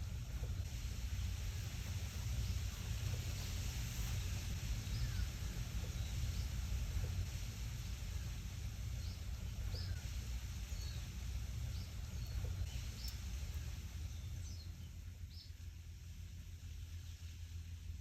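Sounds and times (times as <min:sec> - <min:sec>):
low wind rumble: 0:00.0 - 0:18.0
wind through leaves: 0:00.0 - 0:18.0
bird chirping: 0:09.0 - 0:15.6.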